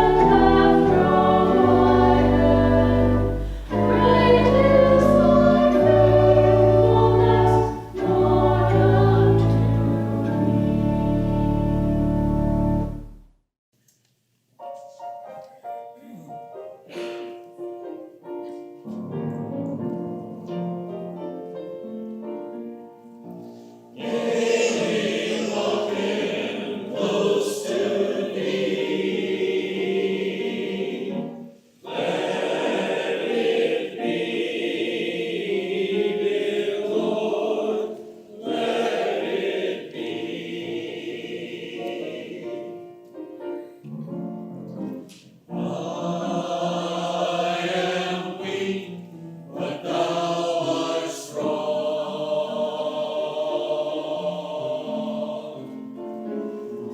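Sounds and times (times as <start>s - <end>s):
group of voices singing: 0.0s - 10.6s, 23.9s - 43.0s, 45.5s - 56.1s
keyboard playing: 0.0s - 13.3s
singers breathing: 3.2s - 4.0s.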